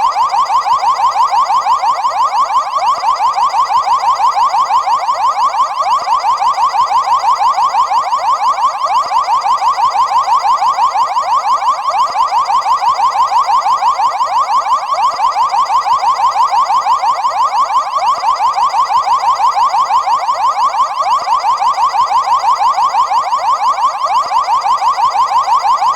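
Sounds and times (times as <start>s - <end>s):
car alarm siren warbling: 9.8s - 25.9s.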